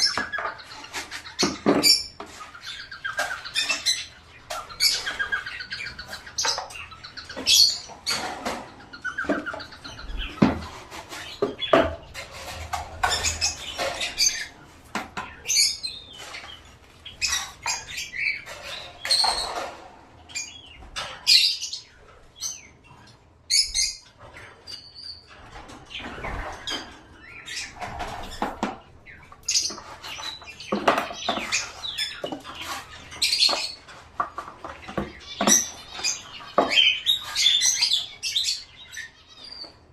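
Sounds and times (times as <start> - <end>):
small birds chirping and squawking: 0.0 - 39.9.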